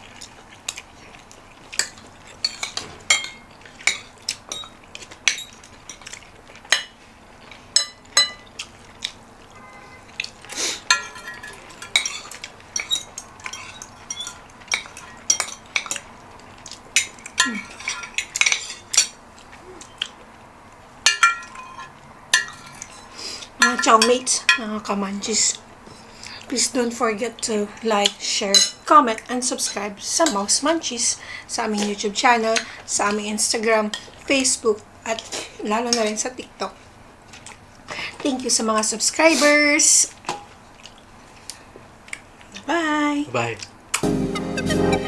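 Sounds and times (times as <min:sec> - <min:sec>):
cutlery clinking against dishes: 0:01.7 - 0:08.6, 0:10.2 - 0:16.1, 0:17.0 - 0:19.2, 0:21.1 - 0:24.7.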